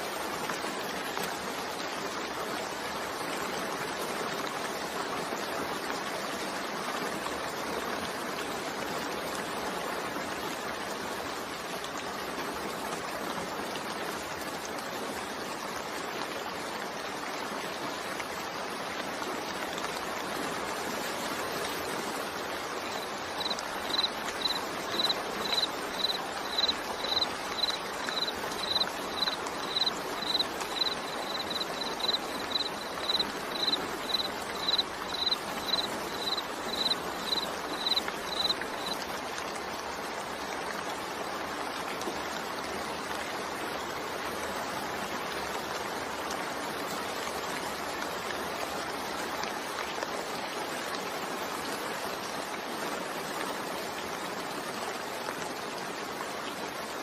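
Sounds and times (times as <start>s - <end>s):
steady rainfall: 0.0s - 57.0s
high regular chirping: 23.4s - 38.5s.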